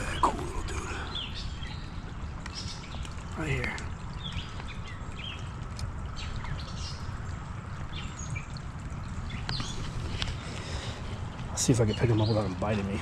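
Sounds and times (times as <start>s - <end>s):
bird chirps: 0.0s - 7.1s
creek water running: 0.0s - 13.0s.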